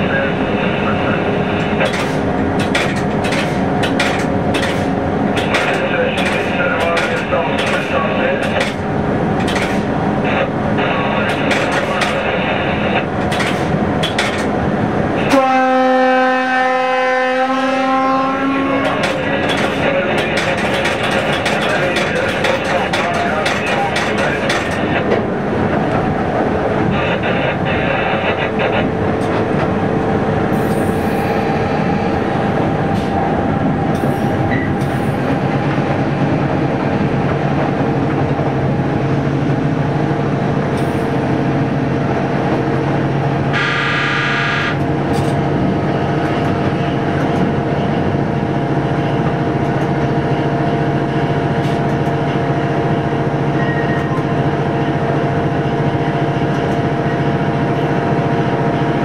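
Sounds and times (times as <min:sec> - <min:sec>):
train wheels on rail: 0:00.0 - 0:15.6, 0:16.6 - 0:59.0
train horn blast: 0:15.2 - 0:19.0, 0:43.5 - 0:44.8.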